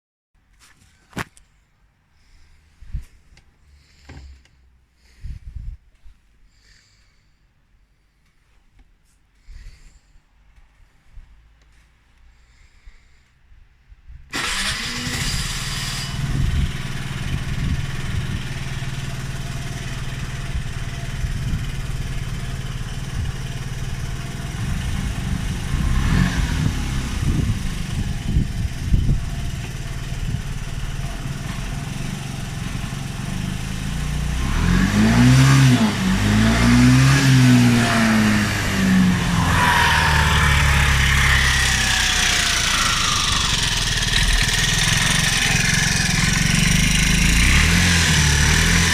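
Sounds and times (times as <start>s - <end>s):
scooter engine starting and idling: 14.3s - 48.9s
engine revving: 14.4s - 48.9s.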